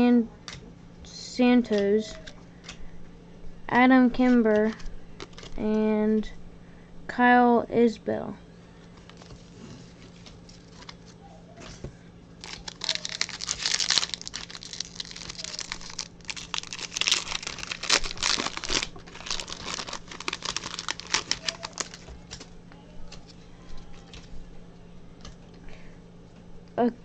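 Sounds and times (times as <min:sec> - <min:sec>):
foil wrapper tearing and crinkling: 0:09.1 - 0:11.2, 0:12.4 - 0:22.5.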